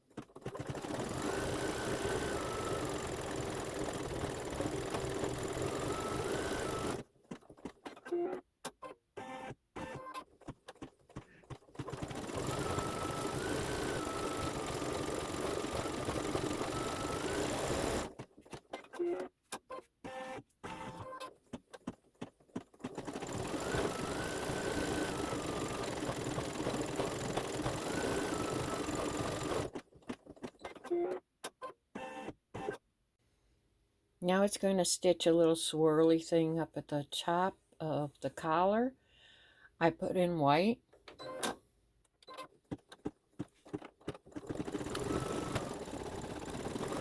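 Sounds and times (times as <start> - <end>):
embroidery machine stitching: 0.0 - 19.3, 20.0 - 31.2, 43.7 - 47.0.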